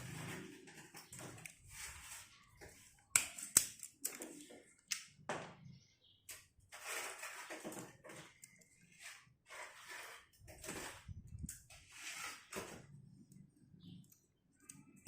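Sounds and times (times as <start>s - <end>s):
scraping and rustling of wires: 0.0s - 4.9s, 6.3s - 15.0s
sharp clicks and snaps: 3.1s - 5.2s.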